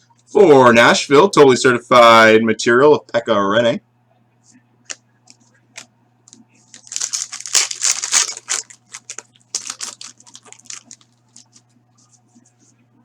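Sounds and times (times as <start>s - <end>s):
wrapper tearing and crinkling: 6.7s - 11.6s.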